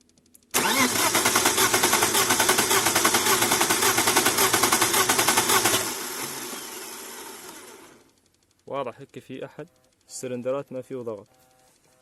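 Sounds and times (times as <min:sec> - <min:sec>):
car engine cranking on starter: 0:00.6 - 0:08.0.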